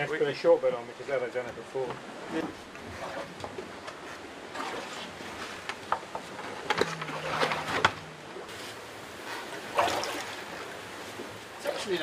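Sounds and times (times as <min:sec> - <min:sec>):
low steady hum: 0:00.0 - 0:11.8
water rushing past hull: 0:01.6 - 0:12.0.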